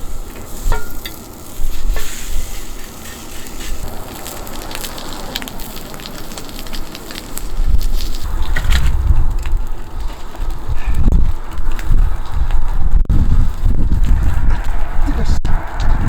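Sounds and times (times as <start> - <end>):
meat sizzling in a hot pan: 0.0 - 8.2
wind buffeting microphone: 0.0 - 16.0.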